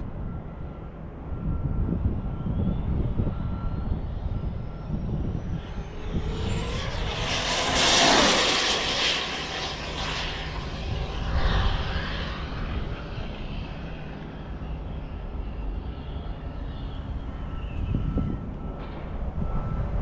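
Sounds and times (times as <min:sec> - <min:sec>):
electric motor whine: 0:02.4 - 0:14.8.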